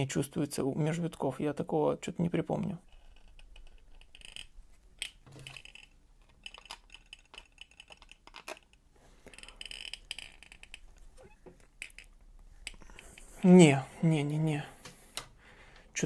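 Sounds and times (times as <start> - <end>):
hand gripper squeaking and clicking: 2.8 - 13.3.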